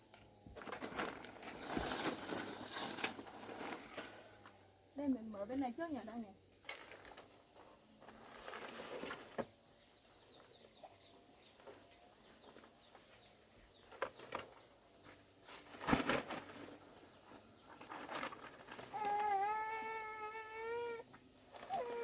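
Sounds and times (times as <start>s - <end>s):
insects chirping: 0.0s - 22.0s
handling knocks and rustles: 0.5s - 4.5s, 10.4s - 19.4s.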